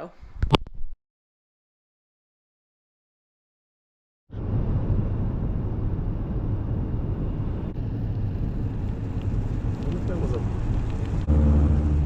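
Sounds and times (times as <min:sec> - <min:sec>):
car driving rumble: 0:04.4 - 0:12.0.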